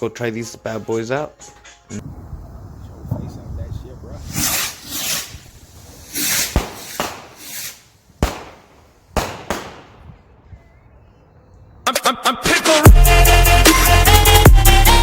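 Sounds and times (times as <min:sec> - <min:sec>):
firework rockets hissing: 0:04.1 - 0:10.0
firework cracks: 0:04.2 - 0:10.1.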